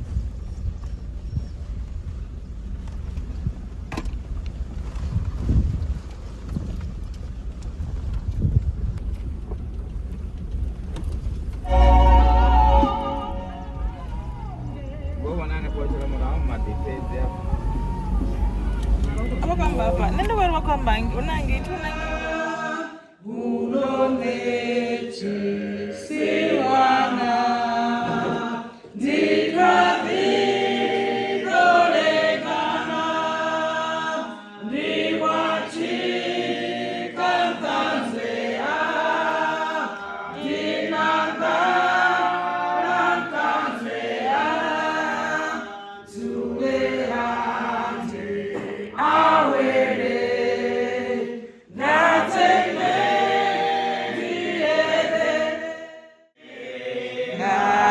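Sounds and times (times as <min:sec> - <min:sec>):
choir singing unaccompanied: 0:11.6 - 0:57.9.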